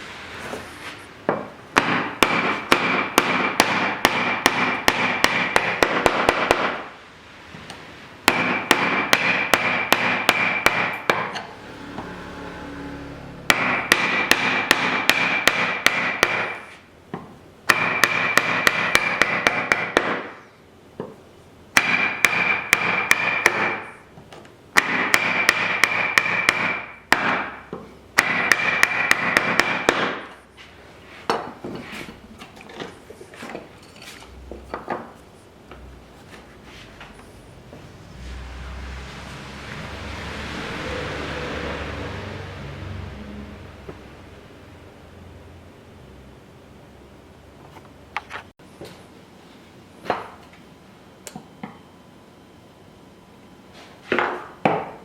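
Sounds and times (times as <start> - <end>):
hand tools striking wood: 1.3 - 6.9, 8.2 - 12.1, 13.5 - 20.4, 21.8 - 23.9, 24.8 - 30.4, 54.0 - 55.0.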